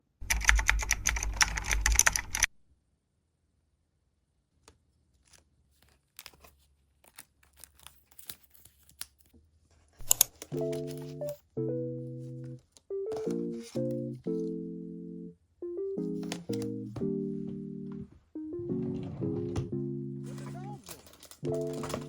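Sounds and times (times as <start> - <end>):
wrapping crinkling and tearing: 5.2 - 9.3.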